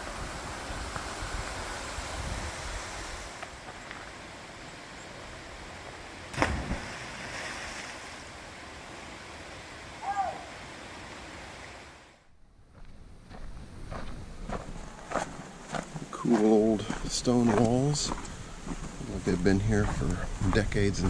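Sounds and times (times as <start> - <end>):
river water rushing over rapids: 0.0 - 12.2.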